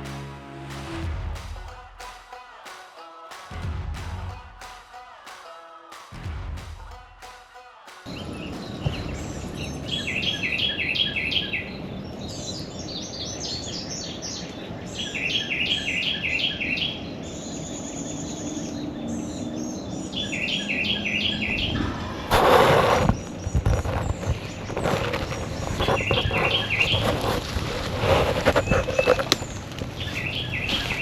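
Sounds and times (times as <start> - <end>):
steady low background: 0.0 - 2.4, 3.5 - 5.0, 6.1 - 7.5
songbird singing rapid notes: 8.1 - 21.8, 23.1 - 27.1, 28.6 - 31.0.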